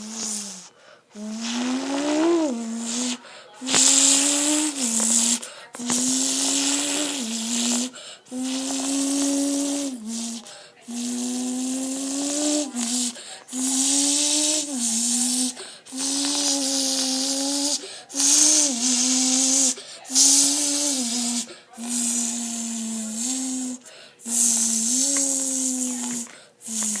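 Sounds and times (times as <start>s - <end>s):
person imitating engine with mouth: 0.0s - 27.0s.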